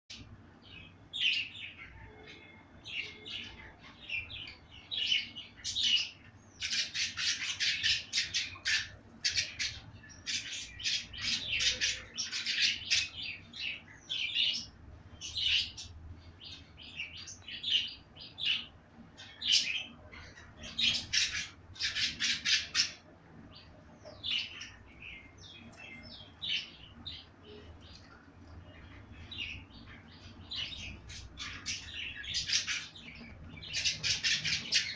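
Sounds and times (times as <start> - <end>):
budgerigar chirping and chattering: 19.5 - 23.0, 30.6 - 34.9.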